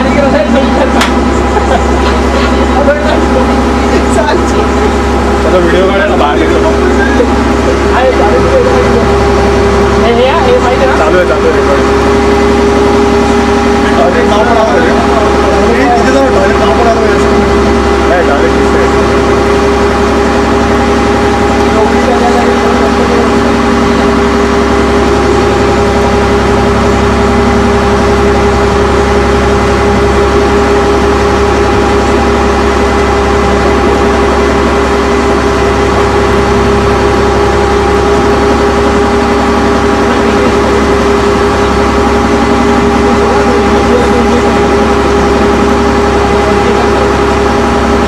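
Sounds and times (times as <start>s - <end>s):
engine droning: 0.0s - 48.0s.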